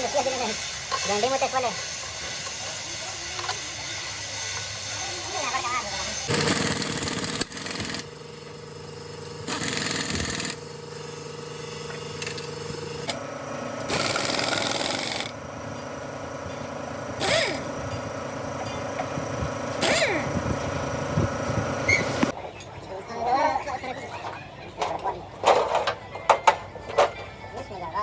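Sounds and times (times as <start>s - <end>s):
workshop machine humming: 0.0s - 28.0s.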